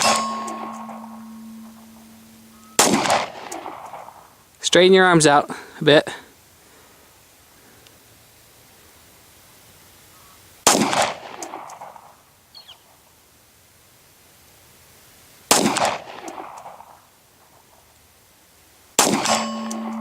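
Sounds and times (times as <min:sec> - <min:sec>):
pistol shots with echo: 0:02.8 - 0:04.2, 0:10.7 - 0:11.8, 0:15.5 - 0:16.5, 0:19.0 - 0:20.0.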